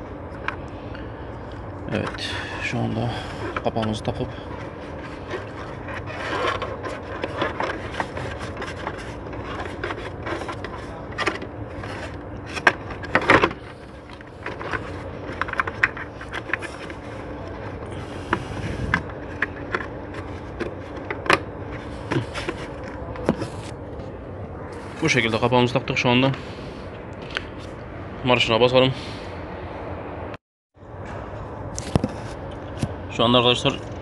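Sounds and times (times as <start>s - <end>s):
plastic cover clicking and scraping: 4.7s - 23.7s.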